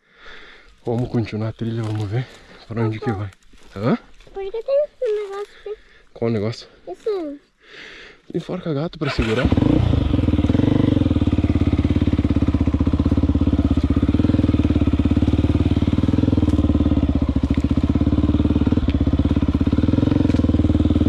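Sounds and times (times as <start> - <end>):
motorcycle engine running: 9.0 - 21.0.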